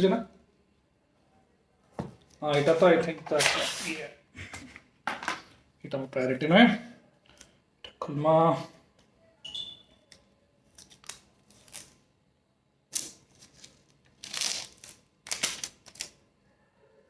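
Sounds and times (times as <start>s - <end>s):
seal strips tearing: 10.7s - 12.0s, 12.9s - 16.2s.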